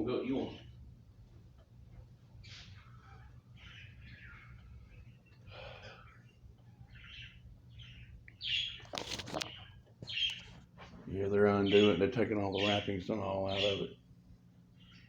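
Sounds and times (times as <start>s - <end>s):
bird chirping: 2.4s - 10.6s, 11.4s - 14.0s, 14.7s - 15.0s.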